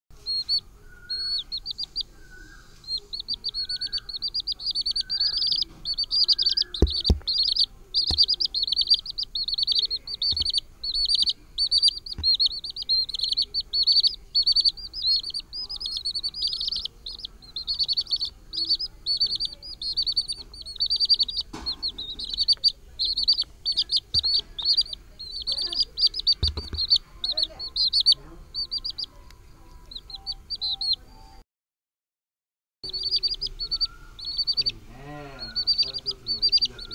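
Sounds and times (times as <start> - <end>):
chicks peeping: 0.1 - 31.3, 32.8 - 36.9
soft low bird calls: 0.2 - 29.1, 32.8 - 36.9
faint thud: 6.7 - 7.4, 21.4 - 22.3, 26.4 - 27.0.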